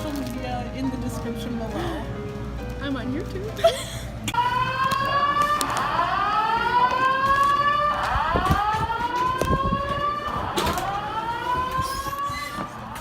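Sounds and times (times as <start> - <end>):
fire alarm rising whoop: 4.4 - 13.0.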